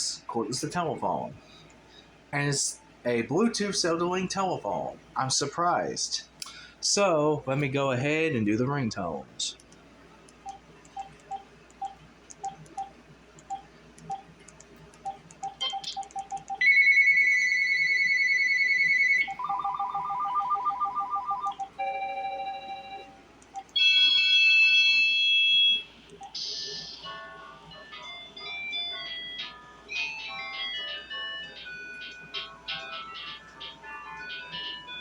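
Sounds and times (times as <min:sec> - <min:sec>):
phone ringtones: 0:15.1 - 0:35.0.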